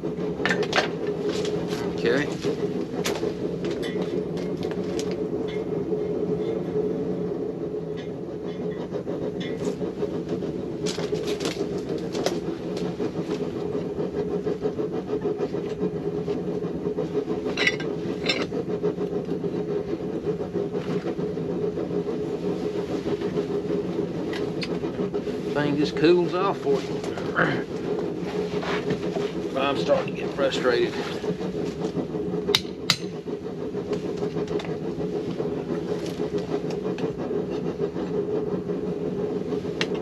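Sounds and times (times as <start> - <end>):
forge roaring: 27.0 - 28.9.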